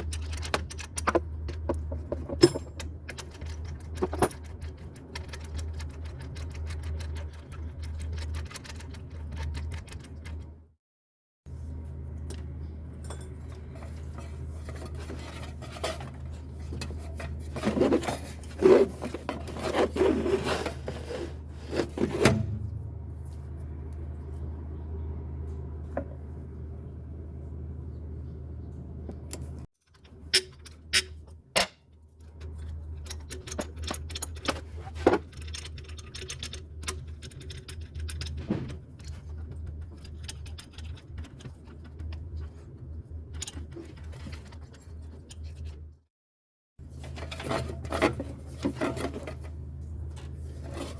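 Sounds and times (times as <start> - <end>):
metal tools clanking and scraping: 0.2 - 4.5, 13.0 - 21.1
steady low hum: 11.5 - 29.7.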